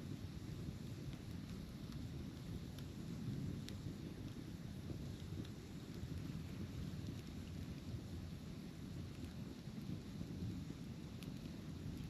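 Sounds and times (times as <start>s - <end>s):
campfire low rumble: 0.0s - 12.0s
firewood crackling: 0.0s - 12.0s.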